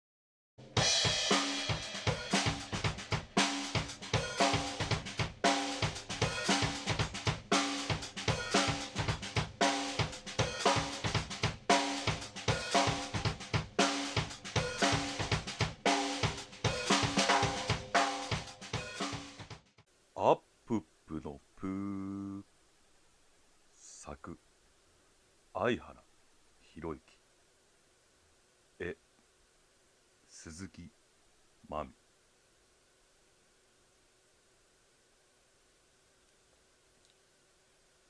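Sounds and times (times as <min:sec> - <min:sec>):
drum kit playing a beat: 0:00.6 - 0:19.8.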